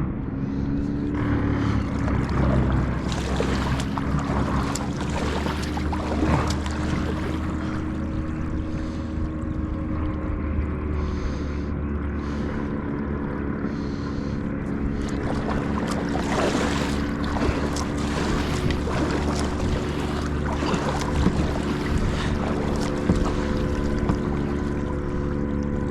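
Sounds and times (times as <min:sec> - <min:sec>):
kayak drive humming: 0:00.0 - 0:25.9
water splashing along hull: 0:00.0 - 0:25.9
wind on microphone: 0:14.2 - 0:25.9.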